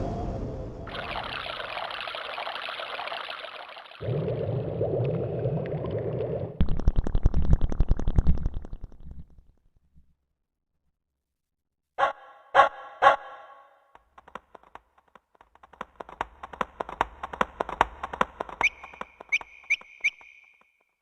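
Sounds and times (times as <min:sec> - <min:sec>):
sharp clicks like hoofbeats: 0:14.0 - 0:20.8.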